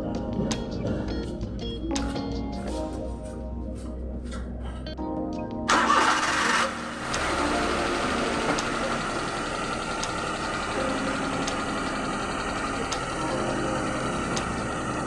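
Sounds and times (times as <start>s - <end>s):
car engine running: 5.7s - 15.0s.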